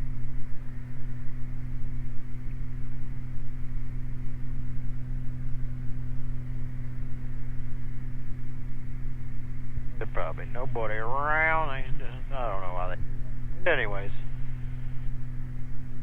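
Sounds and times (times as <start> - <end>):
twin piston engines droning: 6.5 - 16.0.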